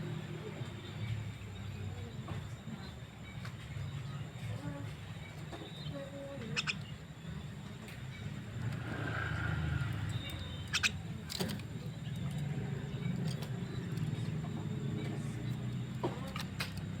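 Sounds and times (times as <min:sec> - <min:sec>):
starling calls: 0:05.2 - 0:16.5.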